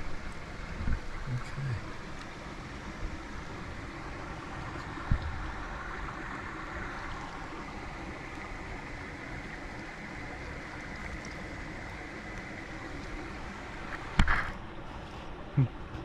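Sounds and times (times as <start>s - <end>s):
wind rumble on microphone: 0.0s - 2.1s, 2.9s - 9.5s
flowing creek water: 0.0s - 14.8s.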